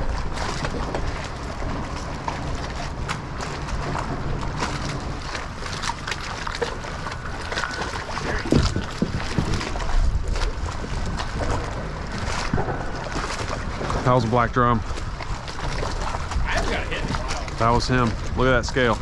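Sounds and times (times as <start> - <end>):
wind buffeting microphone: 0.0 - 19.0
fishing gear clicks and knocks: 5.1 - 10.1.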